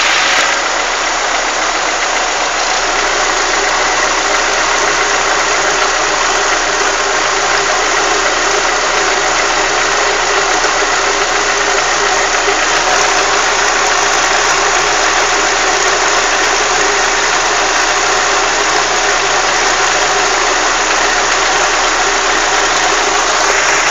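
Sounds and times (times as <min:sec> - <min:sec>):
car engine running: 0:00.0 - 0:23.9.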